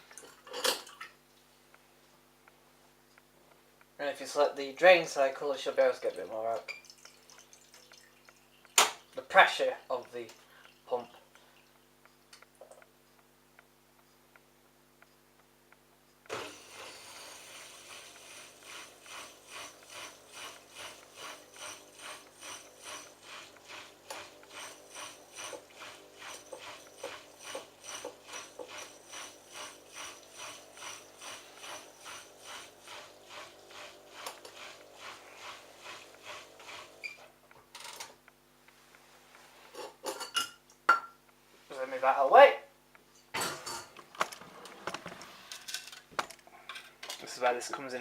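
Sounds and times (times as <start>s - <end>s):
washing machine pulsing: 16.3s - 37.3s.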